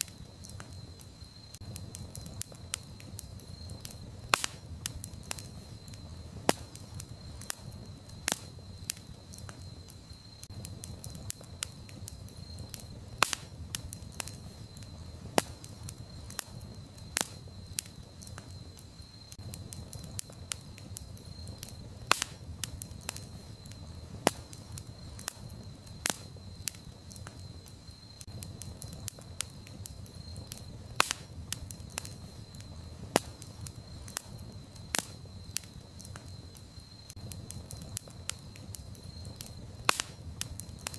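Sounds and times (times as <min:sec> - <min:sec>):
campfire crackling: 0:00.0 - 0:40.9.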